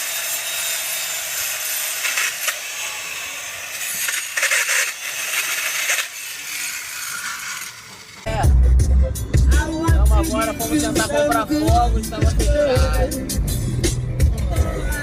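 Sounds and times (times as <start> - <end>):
wood being sawn: 0.0 - 8.3.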